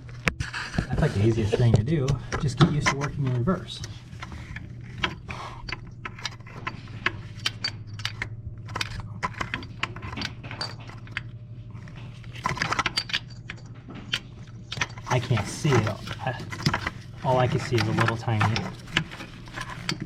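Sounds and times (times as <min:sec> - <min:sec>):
steady low hum: 0:00.0 - 0:20.0
metal hand tools clinking: 0:14.8 - 0:20.0.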